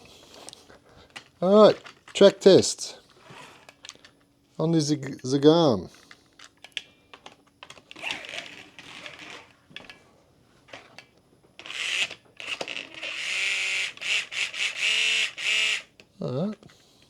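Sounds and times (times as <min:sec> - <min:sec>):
slot car electric motor whirring: 0:07.9 - 0:09.6, 0:11.6 - 0:15.9.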